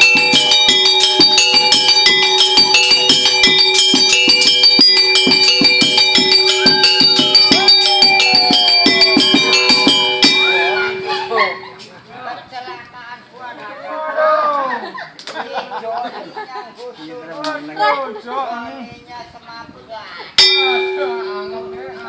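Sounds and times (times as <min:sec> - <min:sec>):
fast drum beat: 0:00.0 - 0:11.7
bell-like metallic tones: 0:00.0 - 0:12.7, 0:20.4 - 0:22.0.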